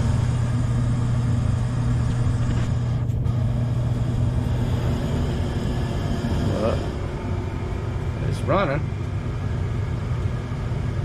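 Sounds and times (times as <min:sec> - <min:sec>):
blower motor humming: 0:00.0 - 0:11.0.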